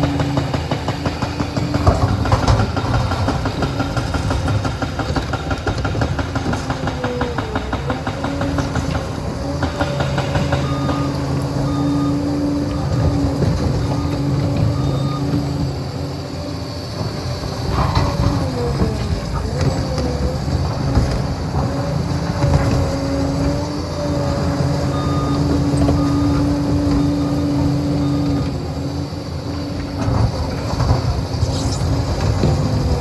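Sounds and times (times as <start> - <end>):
steel tracks clattering: 0.0 - 15.9
diesel engine running: 0.0 - 33.0.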